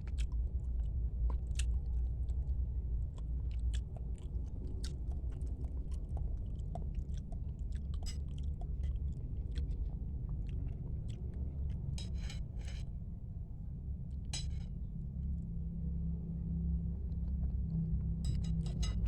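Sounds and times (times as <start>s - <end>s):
wet chewing mouth clicks and smacks: 0.0s - 12.6s.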